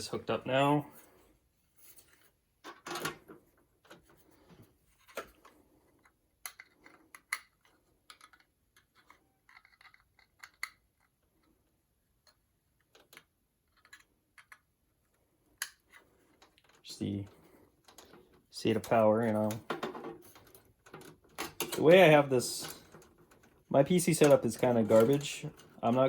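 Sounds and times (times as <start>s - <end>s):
light clicks and taps of handling: 3.3s - 11.6s.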